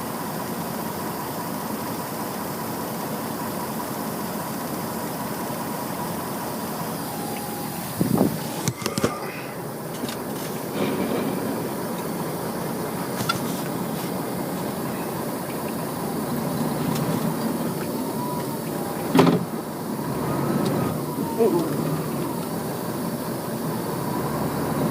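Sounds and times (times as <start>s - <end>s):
heavy machinery running: 0.0s - 24.9s
sharp knocks: 10.7s - 12.2s.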